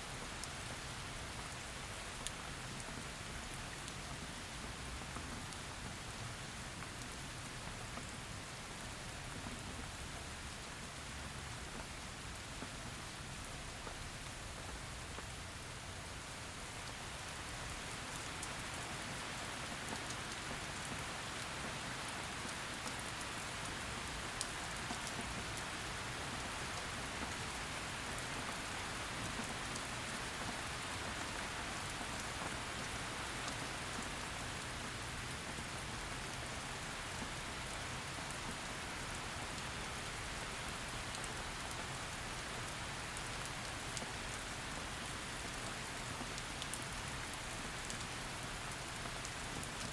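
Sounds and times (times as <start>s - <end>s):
raindrop ticks: 45.1s - 49.9s.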